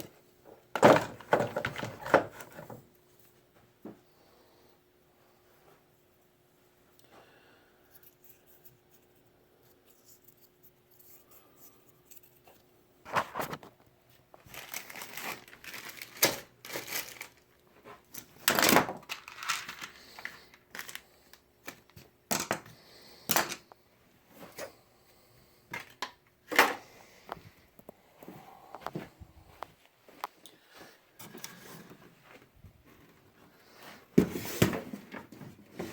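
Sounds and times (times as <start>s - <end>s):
hands handling objects: 7.9s - 23.8s.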